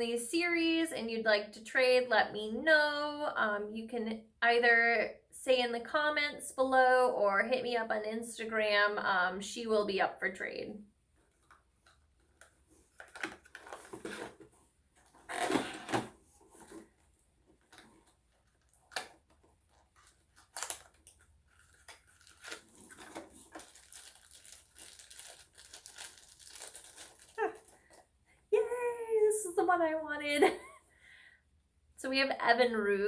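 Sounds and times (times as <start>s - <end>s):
packaging crinkling and tearing: 11.4s - 28.0s.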